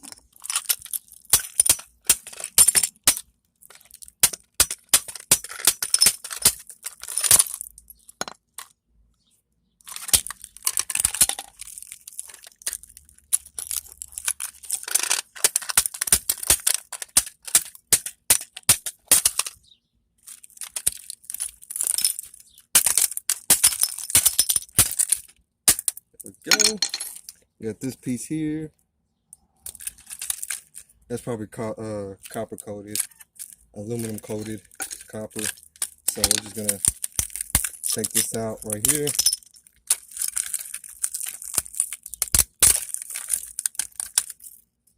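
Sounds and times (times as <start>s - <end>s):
glass pieces crunching and clinking: 0.0s - 8.4s, 9.9s - 19.6s, 20.3s - 27.4s, 29.6s - 30.9s, 32.2s - 44.7s.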